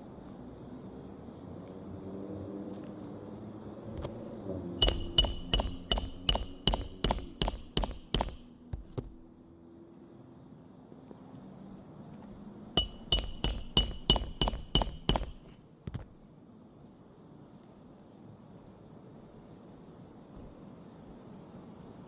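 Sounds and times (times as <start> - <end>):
hammer striking roofing nail: 4.8 - 9.3, 12.8 - 16.1.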